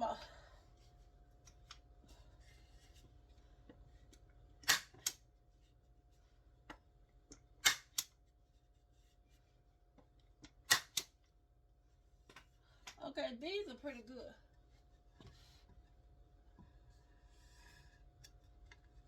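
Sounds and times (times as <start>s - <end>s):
stapler snapping into wood: 4.6s - 5.2s, 7.6s - 8.1s, 10.7s - 11.1s.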